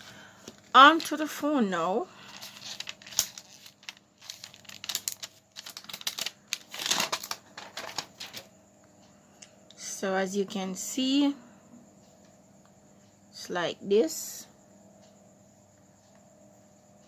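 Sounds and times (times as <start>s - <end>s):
plastic packaging crinkling: 2.2s - 8.5s.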